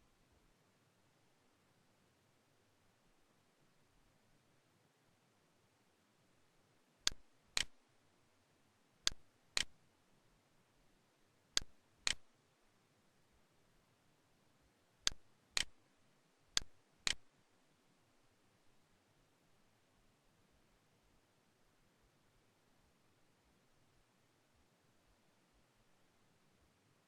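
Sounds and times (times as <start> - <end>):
sharp mouse clicks: 7.1 - 7.8, 9.1 - 9.8, 11.6 - 12.3, 15.1 - 15.8, 16.6 - 17.2.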